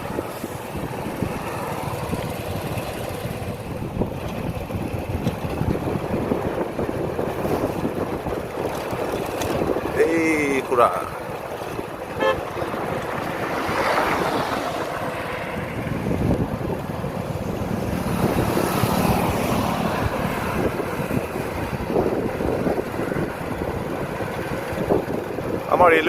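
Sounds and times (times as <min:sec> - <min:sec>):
motorcycle road noise: 0:00.0 - 0:26.0
wind on microphone: 0:00.0 - 0:26.0
vehicle horn toot: 0:12.1 - 0:12.5.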